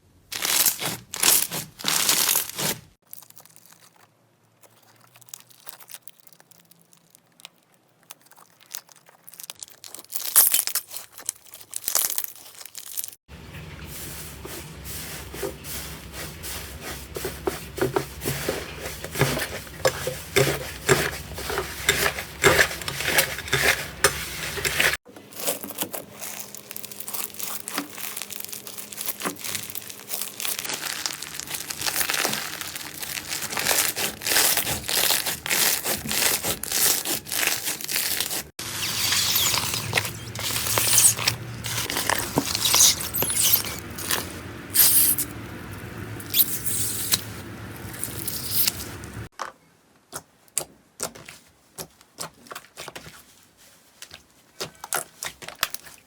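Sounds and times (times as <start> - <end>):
hands squeezing slime: 0.4 - 13.2, 25.4 - 45.4.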